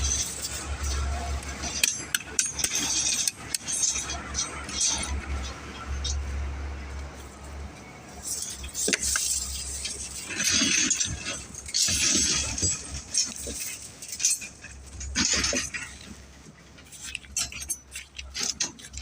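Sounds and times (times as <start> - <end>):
steel bars clinking together: 0.0 - 6.3, 16.9 - 19.0.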